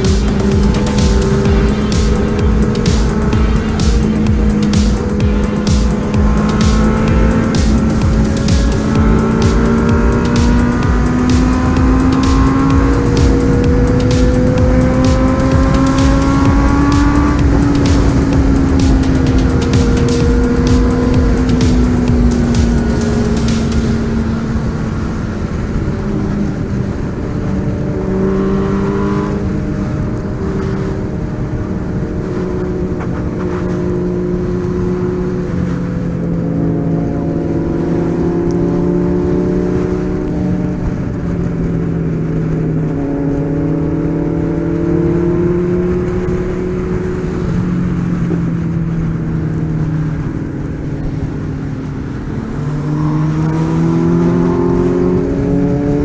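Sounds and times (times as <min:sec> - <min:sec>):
car engine running: 0:00.0 - 0:56.0.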